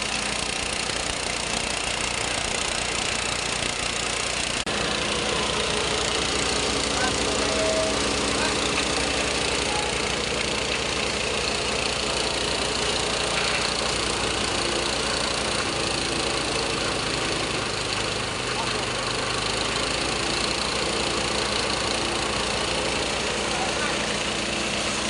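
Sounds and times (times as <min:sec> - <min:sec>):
grinding mill running: 0:00.0 - 0:25.0.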